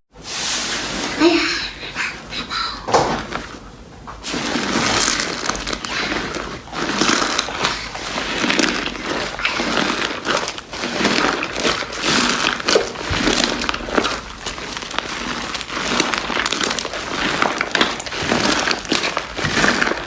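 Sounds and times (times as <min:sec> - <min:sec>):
slime crackling and popping: 0:04.3 - 0:20.0.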